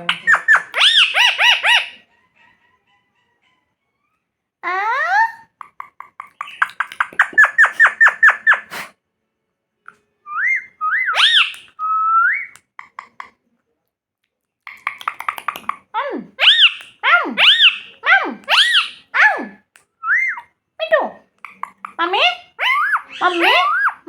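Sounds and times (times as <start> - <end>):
parrot whistling: 0.1 - 2.0, 6.4 - 8.7, 10.3 - 12.6, 16.4 - 20.5, 21.5 - 24.0.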